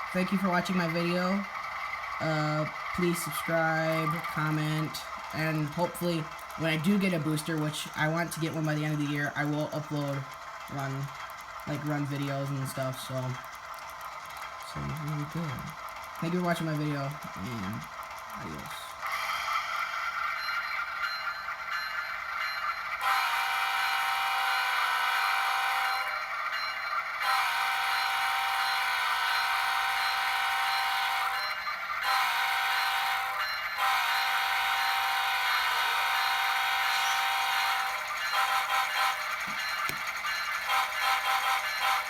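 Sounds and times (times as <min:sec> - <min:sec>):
model train horn through small speaker: 0:23.0 - 0:26.1, 0:27.2 - 0:31.4, 0:32.0 - 0:39.2, 0:40.7 - 0:42.0.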